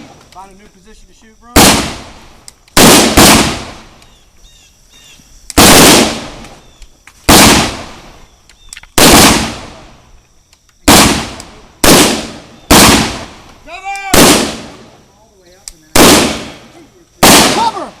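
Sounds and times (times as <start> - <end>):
rifle shots with echo: 1.5 - 3.9, 5.6 - 6.4, 7.3 - 8.0, 9.0 - 9.9, 10.9 - 13.4, 14.1 - 14.9, 15.9 - 17.9.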